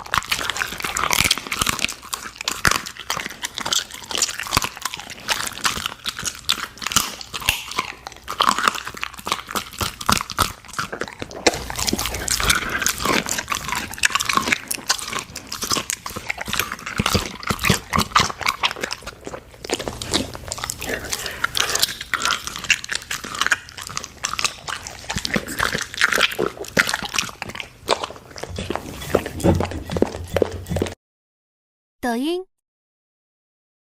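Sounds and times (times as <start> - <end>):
dog crunching and chewing food: 0.0 - 31.0.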